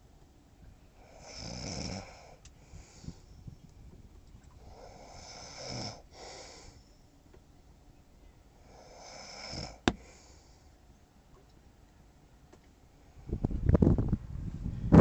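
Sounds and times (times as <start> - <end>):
man snoring: 1.1 - 2.3, 4.8 - 6.5, 8.7 - 9.9.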